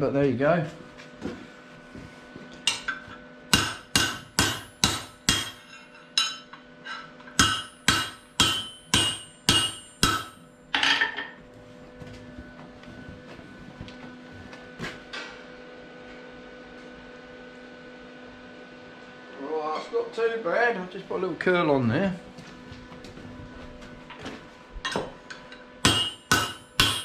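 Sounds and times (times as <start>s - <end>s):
hammer ringing on steel: 3.5s - 6.4s, 7.4s - 10.7s, 25.8s - 27.0s.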